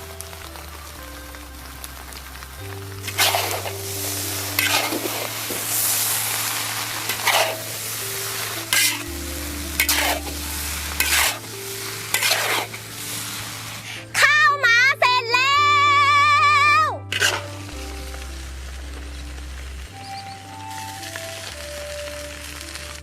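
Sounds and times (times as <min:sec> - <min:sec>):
sausages sizzling in hot oil: 0:00.0 - 0:14.2, 0:17.1 - 0:23.0
soft background music: 0:00.0 - 0:23.0
stirring strokes against pan: 0:02.0 - 0:14.3, 0:17.1 - 0:22.8.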